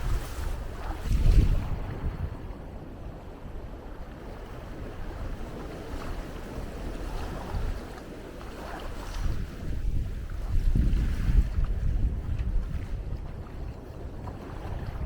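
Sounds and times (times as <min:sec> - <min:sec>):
sea surf washing: 0:00.0 - 0:03.0, 0:04.2 - 0:13.2
wind rumbling on microphone: 0:00.0 - 0:15.0.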